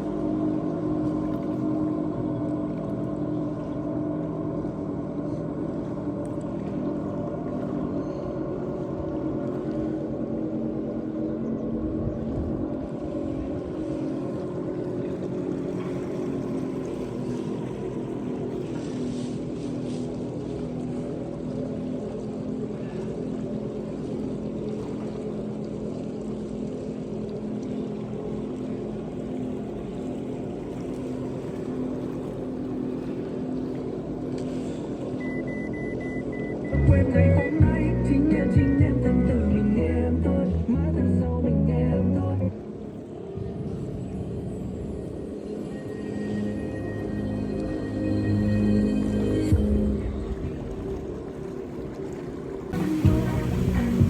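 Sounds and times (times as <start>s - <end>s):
motor humming: 52.4s - 54.0s.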